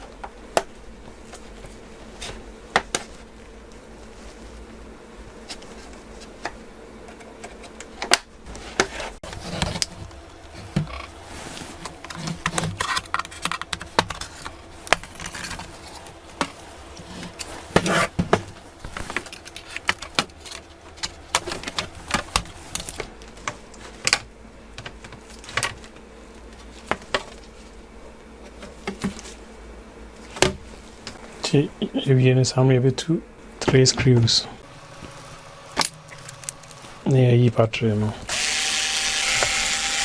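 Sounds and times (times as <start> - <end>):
steady low hum: 9.2 - 23.0, 34.6 - 37.4.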